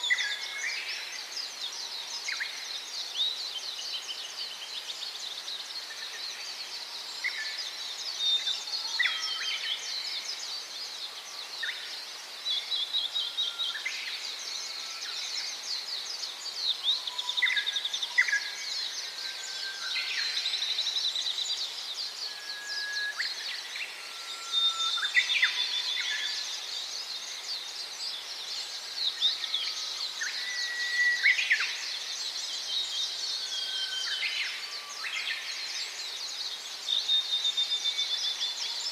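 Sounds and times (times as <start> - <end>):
small birds chirping: 0.0 - 22.4.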